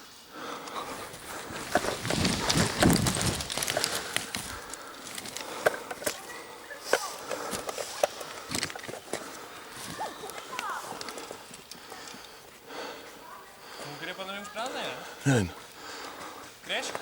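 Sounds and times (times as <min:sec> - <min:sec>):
rustling movement: 0:00.7 - 0:06.3
footsteps: 0:00.8 - 0:05.4.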